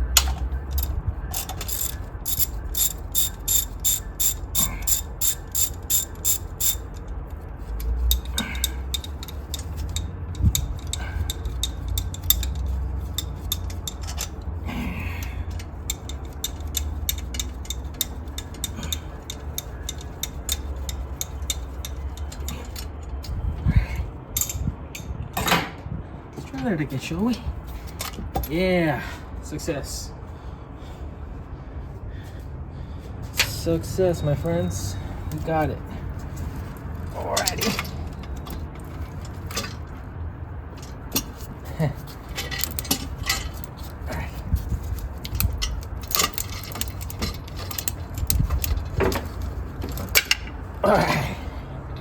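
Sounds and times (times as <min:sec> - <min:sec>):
ratchet wrench clicking: 0:00.2 - 0:14.6, 0:15.2 - 0:23.4, 0:42.3 - 0:44.0, 0:44.6 - 0:50.5.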